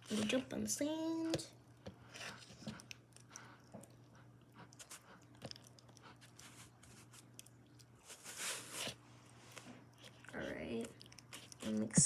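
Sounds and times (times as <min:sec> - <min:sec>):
slime squelching: 0:00.0 - 0:12.0
fork swishing in slime: 0:08.0 - 0:09.8.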